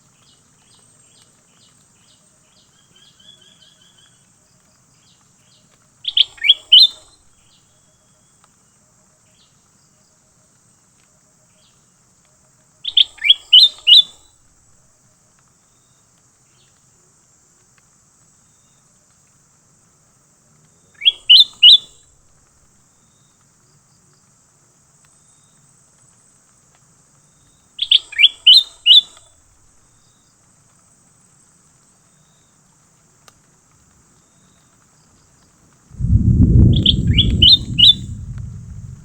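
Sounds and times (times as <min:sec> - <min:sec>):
songbird whistling rising notes: 0:36.0 - 0:39.0.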